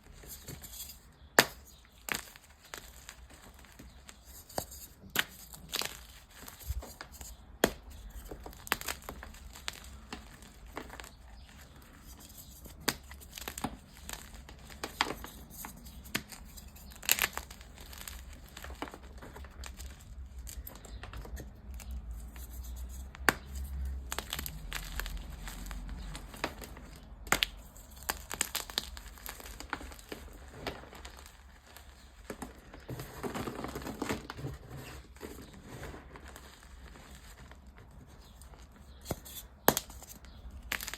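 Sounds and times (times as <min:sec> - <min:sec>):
chalk crunching and crumbling: 0:00.0 - 0:40.9
chalk pieces snapping: 0:00.4 - 0:30.1, 0:38.9 - 0:40.9.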